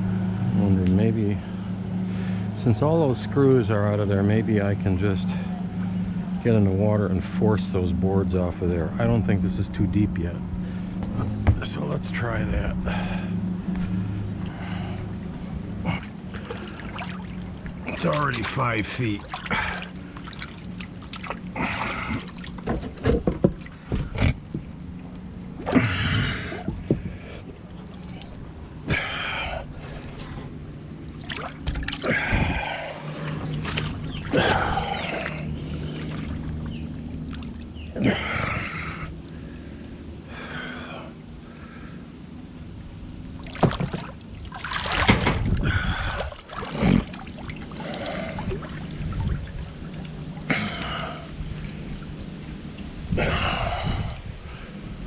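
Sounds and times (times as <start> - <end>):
steady low hum: 0.0 - 55.0
water sloshing and splashing: 10.5 - 40.7, 42.6 - 55.0.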